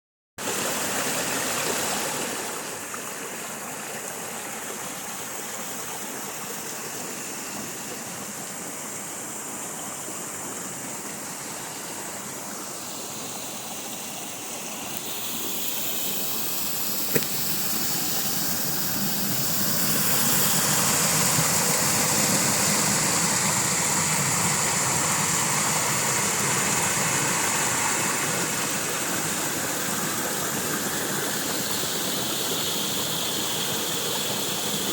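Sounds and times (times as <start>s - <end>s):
waterfall rushing: 7.6s - 34.9s.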